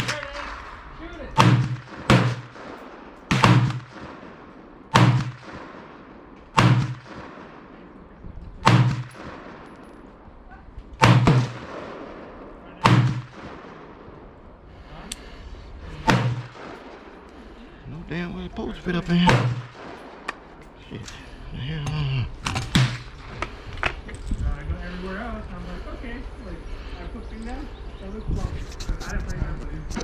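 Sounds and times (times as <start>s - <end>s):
gunshots: 0.0s - 10.1s, 10.9s - 14.5s, 15.8s - 17.6s, 18.8s - 20.6s, 22.4s - 23.7s.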